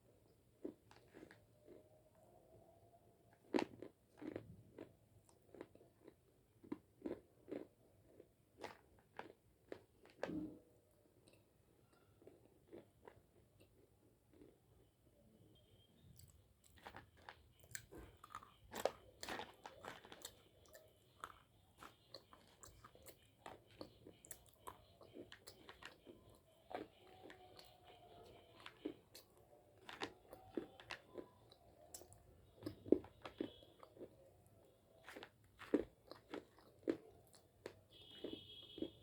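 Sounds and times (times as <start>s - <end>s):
chewing crunchy chalk: 16.6s - 39.0s.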